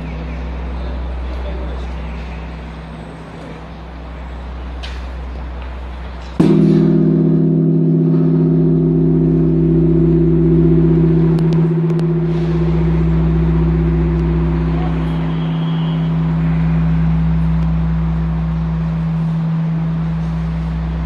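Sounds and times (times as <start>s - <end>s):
large bronze bell ringing: 6.4s - 21.0s.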